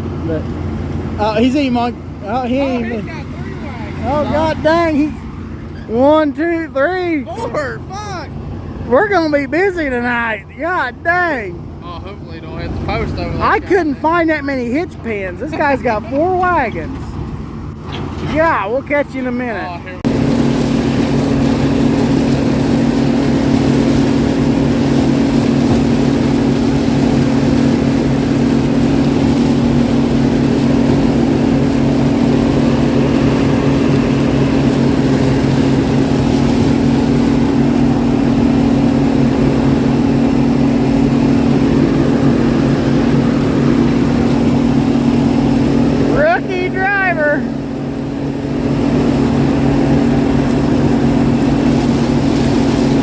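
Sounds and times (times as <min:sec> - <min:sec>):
combine engine droning: 0:00.0 - 0:53.0.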